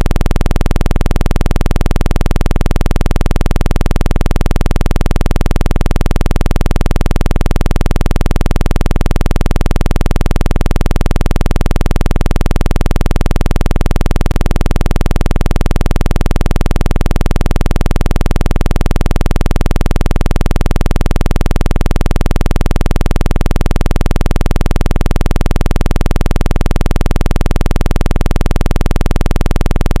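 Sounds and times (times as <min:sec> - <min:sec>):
low synthetic buzz: 0:00.0 - 0:04.6.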